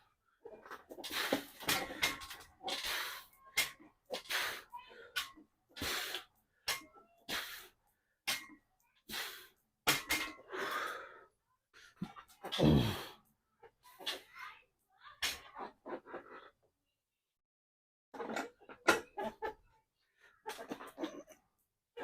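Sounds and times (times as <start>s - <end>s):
person breathing hard: 10.4s - 11.4s, 12.6s - 13.2s.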